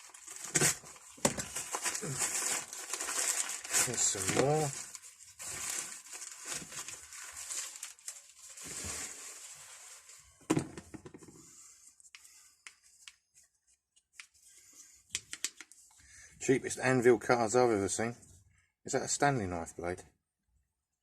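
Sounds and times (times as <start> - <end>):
rustling packaging: 0.0 - 10.5.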